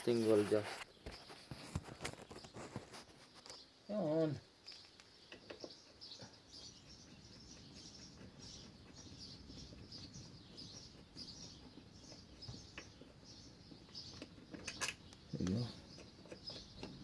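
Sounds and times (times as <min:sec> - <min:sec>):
faint high bird chirps: 0:03.4 - 0:17.0.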